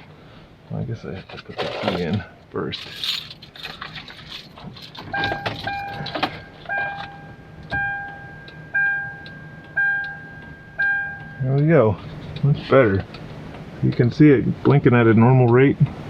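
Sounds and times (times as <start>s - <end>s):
car keys jangling: 2.8s - 8.1s
dashboard beep with click: 5.1s - 11.5s.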